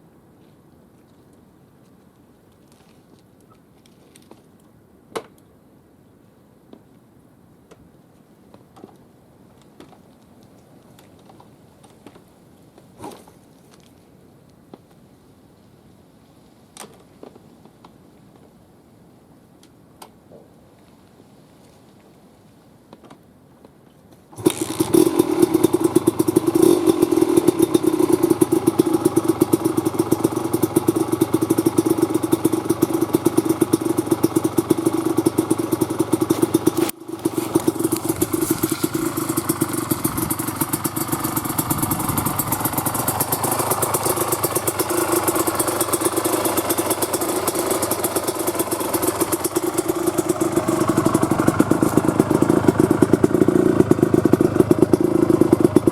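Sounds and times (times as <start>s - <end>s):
two-stroke engine running: 24.4s - 55.9s.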